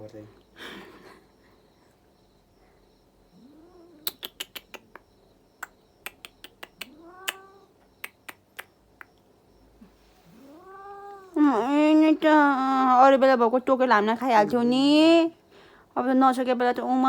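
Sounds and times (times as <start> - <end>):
cat meowing: 3.4 - 4.4, 6.7 - 7.8, 10.3 - 11.6.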